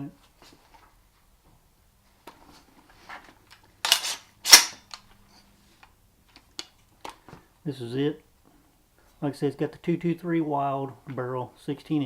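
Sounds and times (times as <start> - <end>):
rifle metallic clacks: 3.8 - 5.0.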